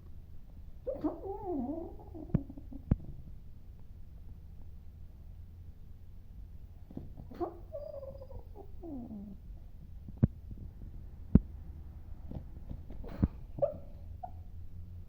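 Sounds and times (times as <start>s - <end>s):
dog whimpering: 0.9s - 2.9s, 7.3s - 9.4s, 13.0s - 14.5s.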